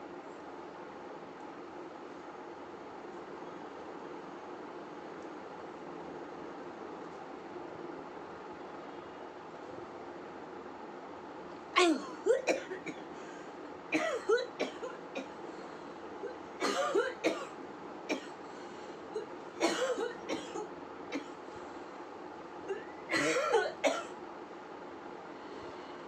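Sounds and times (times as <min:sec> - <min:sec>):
woman coughing: 0:11.8 - 0:13.0, 0:14.0 - 0:15.3, 0:16.2 - 0:17.5, 0:18.1 - 0:18.3, 0:19.2 - 0:21.3, 0:22.7 - 0:24.1.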